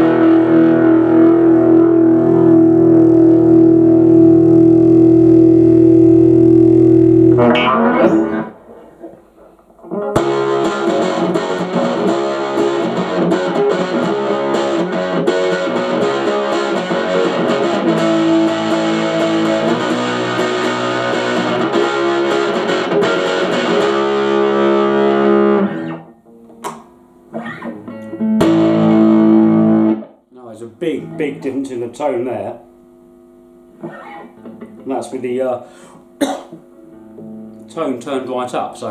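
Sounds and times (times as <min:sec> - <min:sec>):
electric guitar notes and chords: 0:00.0 - 0:31.8, 0:32.8 - 0:37.9
sharp click: 0:26.6 - 0:26.9.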